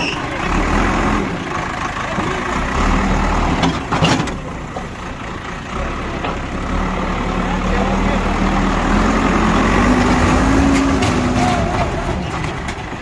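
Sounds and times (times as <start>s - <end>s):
bulldozer diesel engine running: 0.0s - 13.0s
scraping clattering noise: 9.8s - 13.0s.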